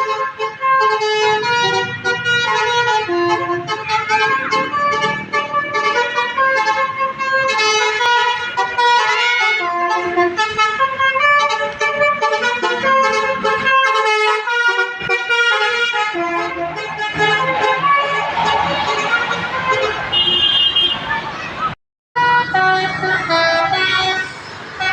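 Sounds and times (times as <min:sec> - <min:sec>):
multi-tone musical air horn: 0:00.0 - 0:21.1, 0:22.2 - 0:24.9.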